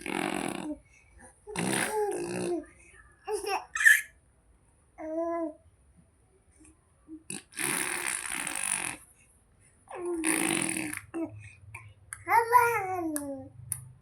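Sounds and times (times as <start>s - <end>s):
baby blowing raspberries: 0.0s - 0.8s, 1.5s - 2.5s, 7.3s - 9.0s, 10.0s - 11.2s.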